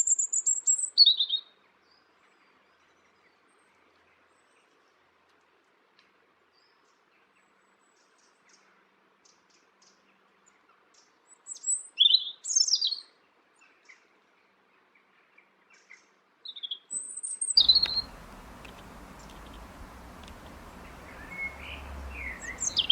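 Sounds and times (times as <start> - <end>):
small bird singing: 0.0 - 2.0, 11.0 - 13.1, 16.5 - 22.9
steady background hiss: 17.6 - 22.9.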